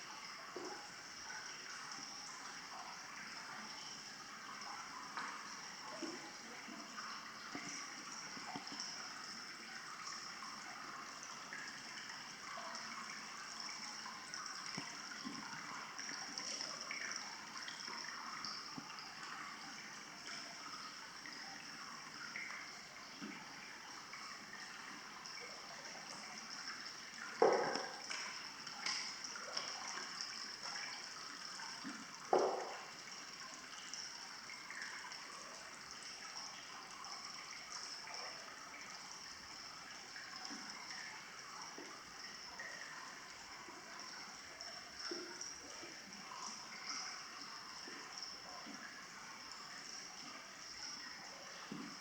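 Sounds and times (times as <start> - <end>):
water trickling: 0.0 - 52.0
small water splashes: 24.4 - 36.6.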